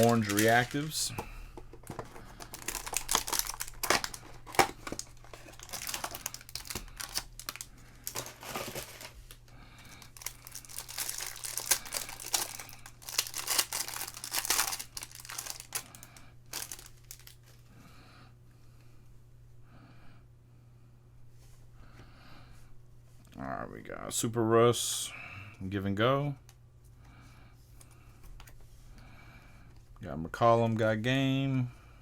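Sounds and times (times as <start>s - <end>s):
wrappers torn and crinkled: 0.0s - 1.0s, 2.2s - 9.4s, 10.0s - 17.6s.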